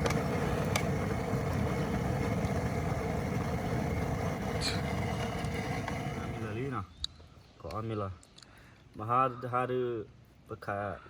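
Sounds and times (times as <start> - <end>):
vehicle engine running: 0.0 - 6.6.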